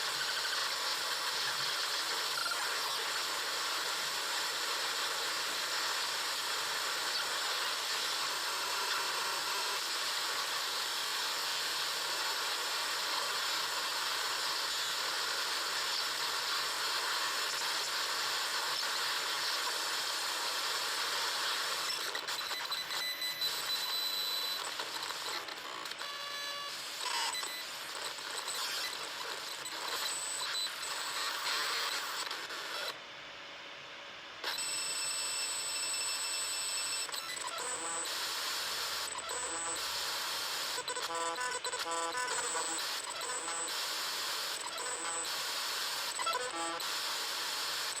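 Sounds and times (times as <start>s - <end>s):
harsh hiss with tones: 0.0s - 22.1s, 34.5s - 41.1s, 41.7s - 48.0s.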